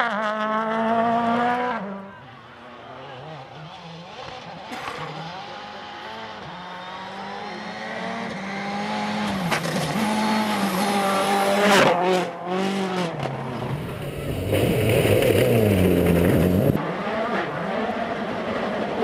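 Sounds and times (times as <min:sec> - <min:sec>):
rally car engine revving: 0:00.0 - 0:02.1, 0:02.9 - 0:19.0.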